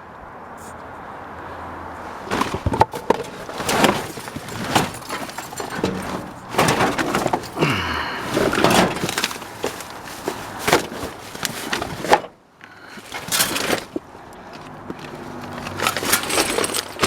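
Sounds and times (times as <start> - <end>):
creaking scrape: 2.1 - 12.3, 12.9 - 14.0
junk rattling in a dumpster: 2.2 - 14.1, 15.6 - 17.0.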